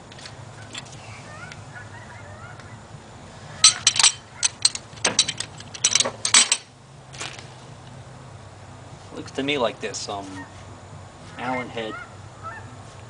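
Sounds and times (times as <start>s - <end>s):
metallic clinks and rattles: 3.6s - 6.7s.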